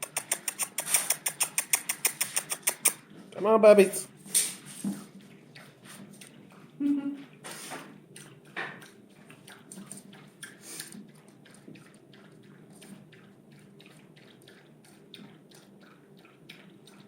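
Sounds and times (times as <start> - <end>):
puppies' soft clicks and rustles: 0.0 - 3.3.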